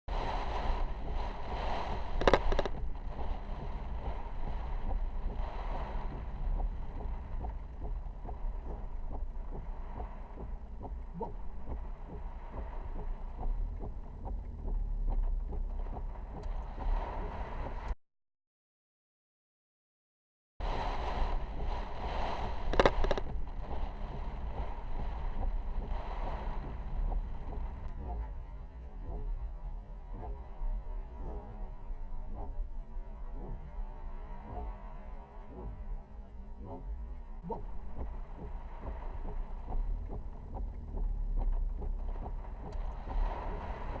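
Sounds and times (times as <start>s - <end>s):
wind and rain on a car: 0.1s - 18.0s, 20.6s - 44.0s
sharp clicks: 2.2s - 2.8s, 22.7s - 23.4s.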